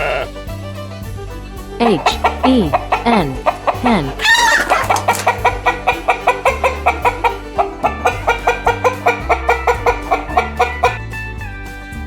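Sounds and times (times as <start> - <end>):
hen clucking: 0.0 - 0.3, 1.8 - 11.1
music with bass line: 0.0 - 12.0
plucked guitar music: 0.0 - 12.0.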